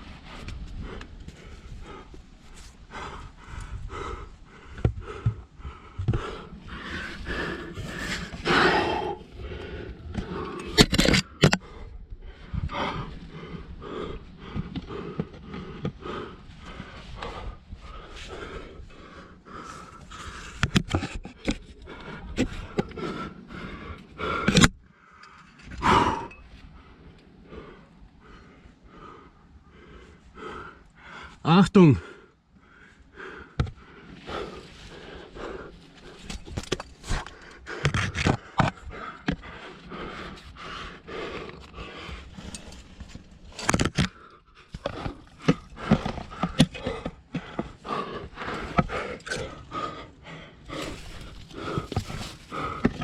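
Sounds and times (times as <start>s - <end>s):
person breathing hard: 0.0s - 53.0s
knocks and scrapes on rock: 10.2s - 11.6s, 20.0s - 23.0s, 36.0s - 39.5s, 41.4s - 49.6s, 50.7s - 53.0s.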